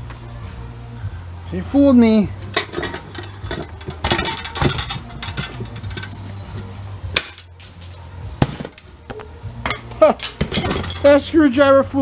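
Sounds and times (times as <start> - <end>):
hand tools clinking on metal: 2.4 - 7.9, 8.6 - 11.4.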